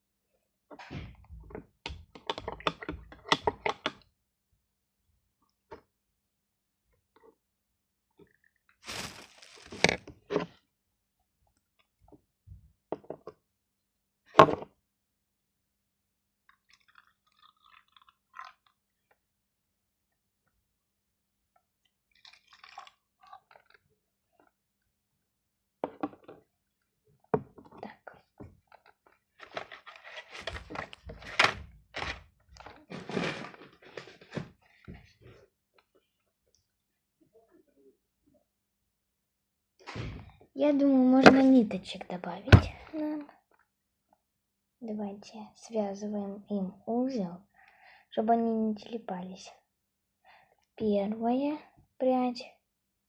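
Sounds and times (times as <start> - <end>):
craft materials knocking and rustling: 8.8 - 10.6, 29.4 - 35.1, 41.2 - 41.6, 42.5 - 42.9.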